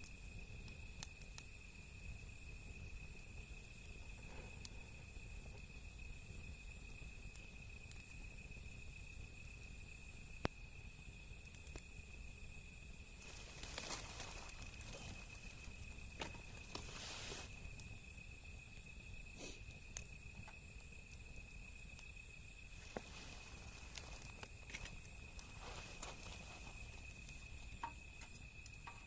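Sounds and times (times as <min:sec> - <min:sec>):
high insect drone: 0:00.0 - 0:29.0
wood fire crackling: 0:00.0 - 0:29.0
hissing rustles: 0:13.1 - 0:18.0, 0:22.6 - 0:28.5.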